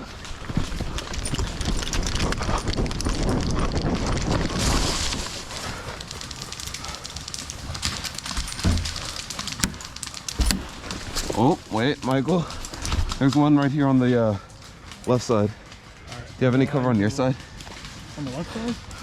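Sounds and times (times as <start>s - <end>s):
gear rattling and rustling: 5.4s - 12.0s.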